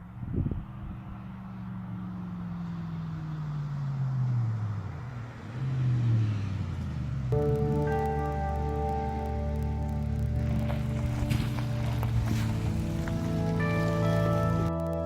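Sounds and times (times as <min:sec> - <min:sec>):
music: 0:07.4 - 0:15.0.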